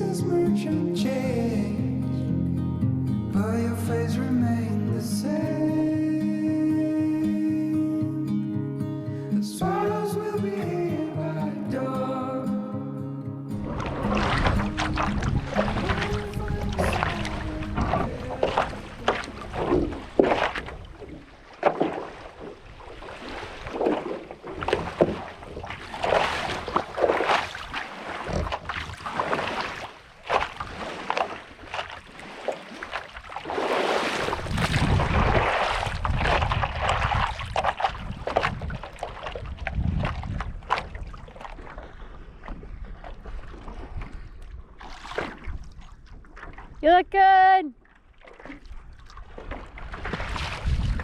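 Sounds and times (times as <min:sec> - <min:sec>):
wind rumbling on microphone: 0:13.5 - 0:31.0, 0:33.5 - 0:46.8, 0:48.6 - 0:51.0
paddle swishing through water: 0:13.5 - 0:51.0.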